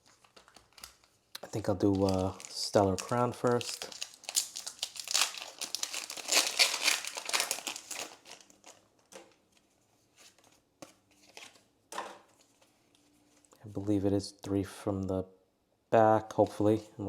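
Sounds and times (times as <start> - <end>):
foil wrapper crinkling: 0.0 - 9.4.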